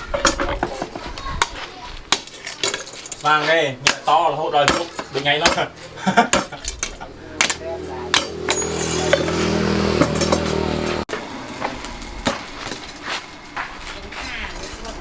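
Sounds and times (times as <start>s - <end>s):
small engine running: 7.0s - 13.4s.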